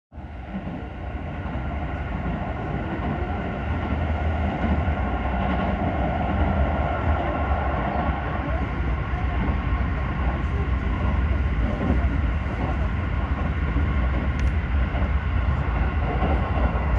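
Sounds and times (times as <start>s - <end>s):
train rumbling: 0.1s - 16.9s.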